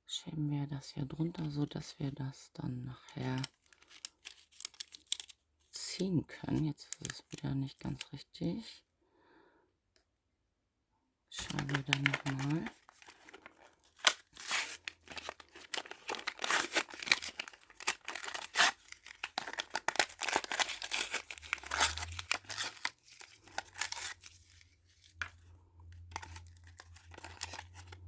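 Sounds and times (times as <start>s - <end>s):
packaging crinkling and tearing: 3.2s - 5.4s, 6.8s - 7.4s, 11.4s - 25.4s, 26.0s - 28.0s.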